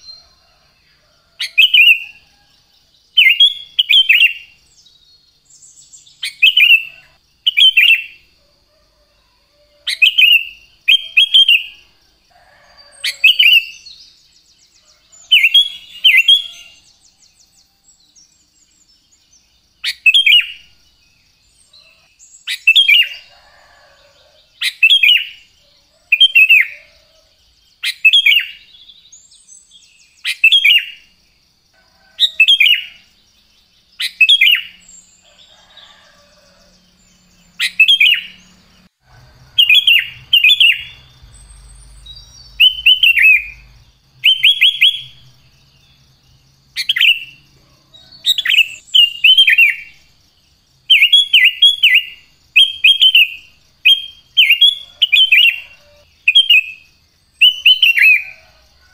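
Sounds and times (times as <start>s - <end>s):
bulbul singing whistled phrases: 3.1s - 8.3s, 9.9s - 11.9s, 19.8s - 20.7s, 22.3s - 23.3s, 39.5s - 45.4s, 48.3s - 50.0s, 50.9s - 58.4s.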